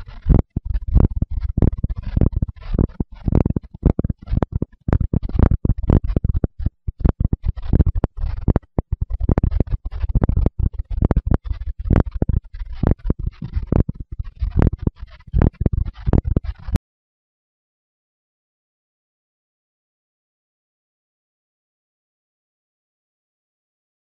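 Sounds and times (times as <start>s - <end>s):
fast heartbeat thumps: 0.0s - 16.8s
scratchy rustle: 0.0s - 16.8s.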